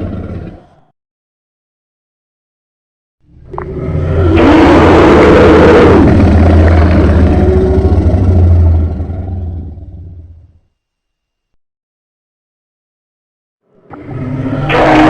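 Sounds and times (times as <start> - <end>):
dragon roar sound effect: 3.5 - 10.2, 14.0 - 15.0.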